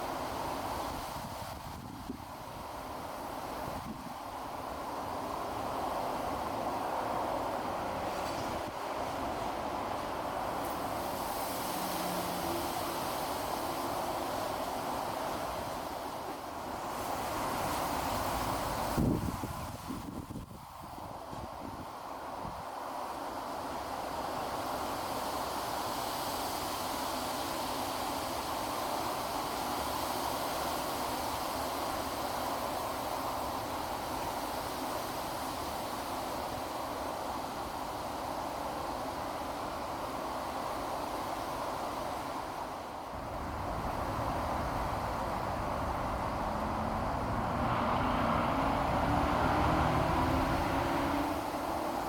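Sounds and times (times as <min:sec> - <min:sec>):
distant traffic rumble: 0:43.2 - 0:52.0
distant vehicles rushing: 0:43.3 - 0:52.0.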